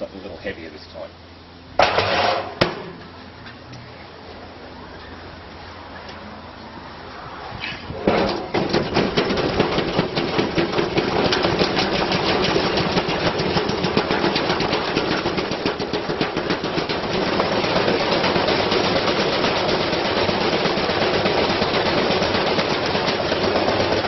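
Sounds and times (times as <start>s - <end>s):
washing machine drum banging: 1.8s - 3.1s, 8.0s - 24.0s
washing machine motor hum: 5.3s - 24.0s.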